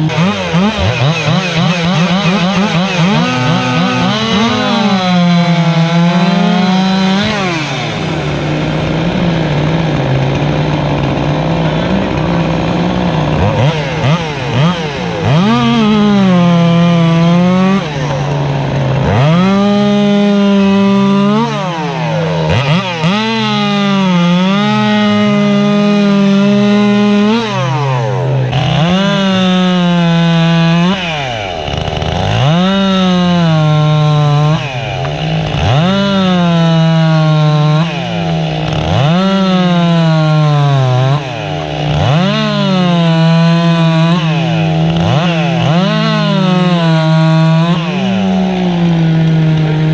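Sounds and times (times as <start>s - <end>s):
chainsaw cutting through log: 0.0s - 49.9s.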